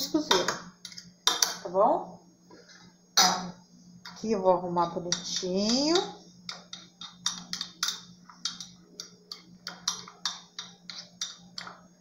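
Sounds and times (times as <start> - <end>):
utensil tapping against a cup: 5.1 - 11.9.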